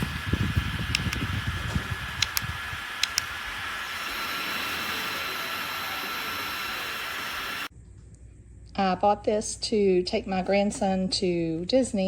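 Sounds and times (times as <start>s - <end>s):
neck fan airy hiss: 0.0s - 7.7s
light clicks: 0.8s - 3.4s.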